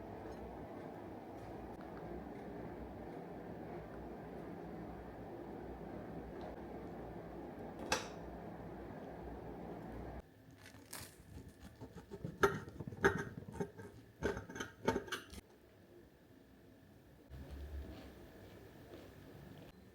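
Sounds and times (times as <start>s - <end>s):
steady low hum: 0.0s - 10.3s.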